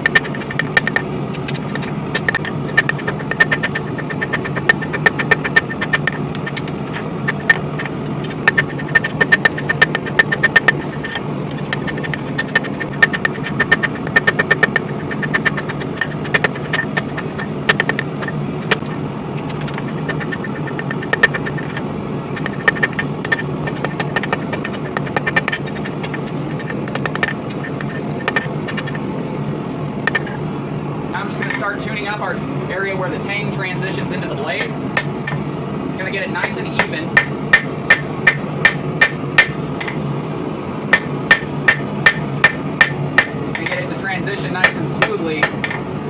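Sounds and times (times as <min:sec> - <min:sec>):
forge running: 0:00.0 - 0:32.7.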